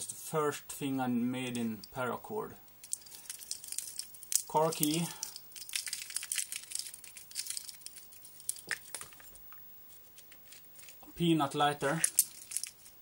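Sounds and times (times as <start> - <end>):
keys rattling on a keyring: 2.8 - 9.4, 11.9 - 13.0.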